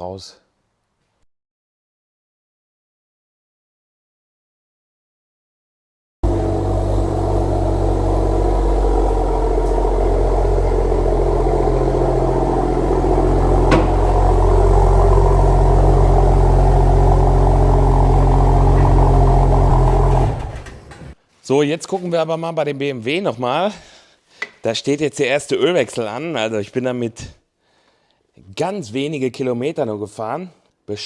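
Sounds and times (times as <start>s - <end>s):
car engine humming: 6.2s - 21.2s.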